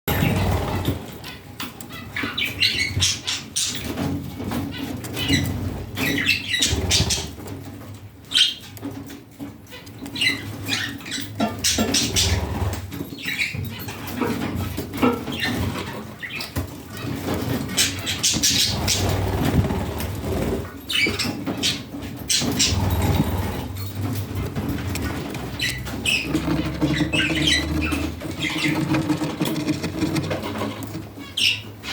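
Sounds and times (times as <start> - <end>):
budgerigars chirping: 4.8 - 7.5, 15.3 - 23.2, 25.1 - 29.2, 30.2 - 31.9.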